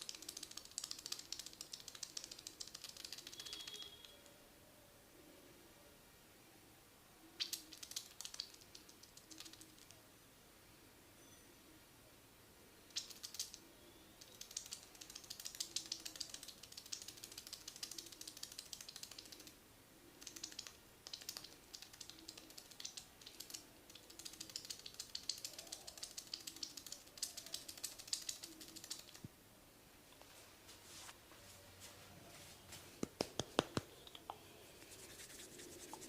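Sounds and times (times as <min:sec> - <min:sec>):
hair crackling under fingers: 0:00.0 - 0:04.2, 0:07.4 - 0:10.0, 0:12.9 - 0:13.6, 0:14.2 - 0:19.6, 0:20.2 - 0:29.3, 0:33.0 - 0:36.0.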